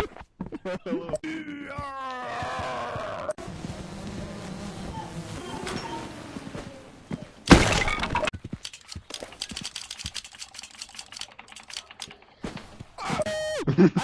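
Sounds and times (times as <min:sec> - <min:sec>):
rapid clicking and clattering: 0:08.6 - 0:12.4.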